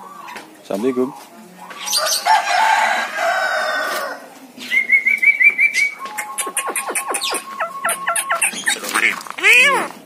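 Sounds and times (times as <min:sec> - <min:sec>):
bird whistling and chattering: 0:04.7 - 0:10.0.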